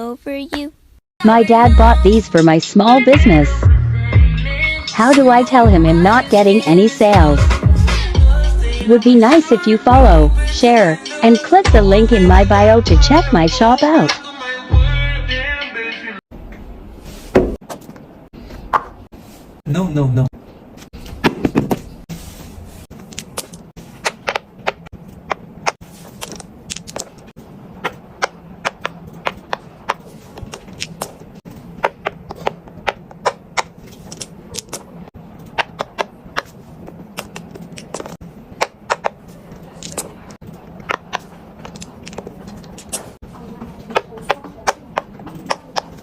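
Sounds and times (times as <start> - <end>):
fidget toys clicking and tapping: 43.9 - 46.0.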